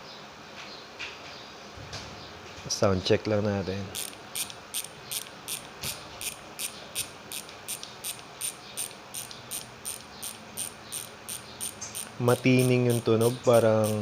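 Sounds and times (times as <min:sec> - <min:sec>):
bicycle hub ratchet clicking: 0:03.9 - 0:14.0.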